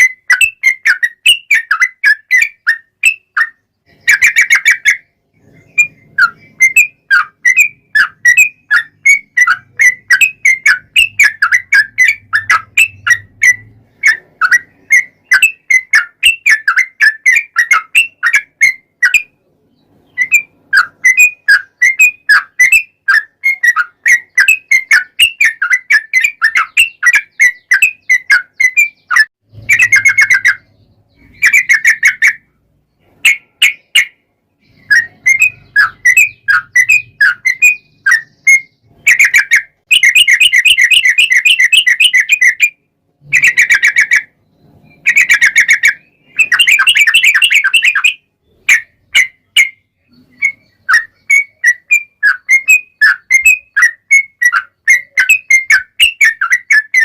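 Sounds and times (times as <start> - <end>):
bird chirping with rolled trills: 0.0 - 57.0.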